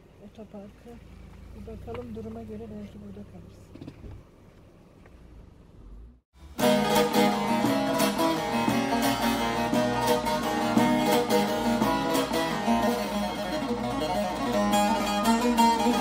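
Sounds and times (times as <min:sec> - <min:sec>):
plucked string music: 0:06.4 - 0:16.0.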